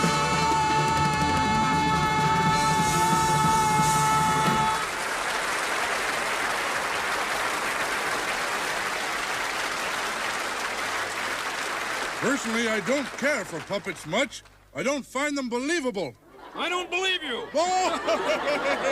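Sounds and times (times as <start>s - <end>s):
audience applause: 0.0s - 14.3s.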